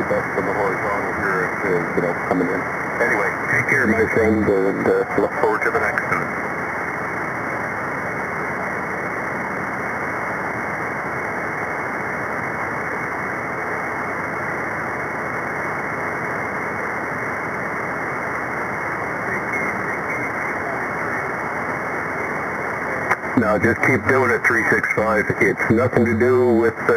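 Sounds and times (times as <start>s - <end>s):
radio static hiss: 0.0s - 26.9s.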